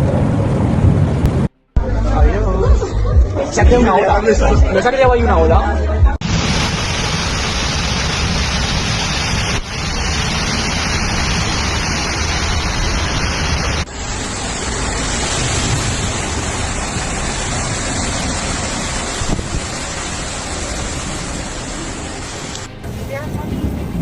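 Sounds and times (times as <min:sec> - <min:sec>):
floodwater rushing through street: 0:06.2 - 0:24.0
heavy rain: 0:06.2 - 0:24.0.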